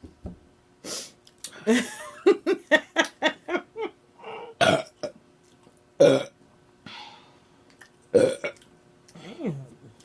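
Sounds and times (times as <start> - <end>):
person belching loudly: 4.6 - 5.2, 6.0 - 6.4, 8.2 - 8.6.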